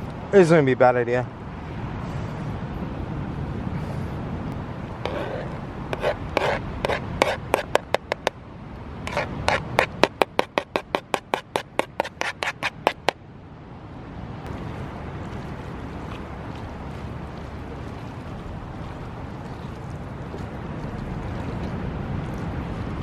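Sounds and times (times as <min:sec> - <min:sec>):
utensil scraping a cooking pan: 0:05.0 - 0:08.3, 0:09.1 - 0:13.1.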